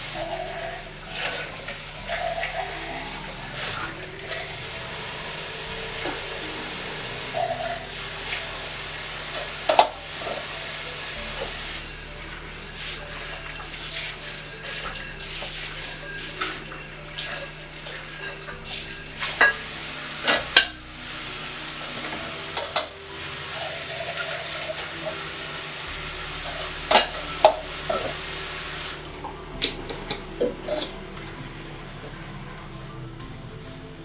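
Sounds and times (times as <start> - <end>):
running tap water: 0.0 - 34.0
dishes clinking against sink: 9.2 - 10.5, 13.1 - 20.9, 22.0 - 25.3.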